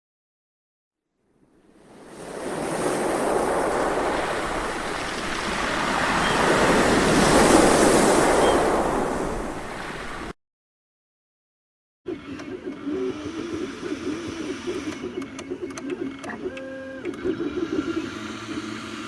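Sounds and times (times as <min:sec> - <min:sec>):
rushing surf-like noise: 0:01.6 - 0:10.4.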